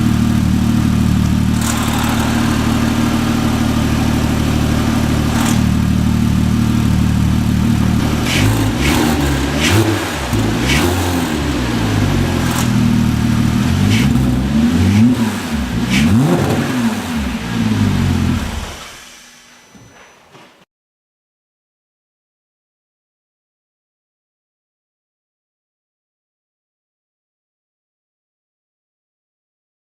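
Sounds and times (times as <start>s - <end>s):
car engine idling and revving: 0.0s - 19.5s.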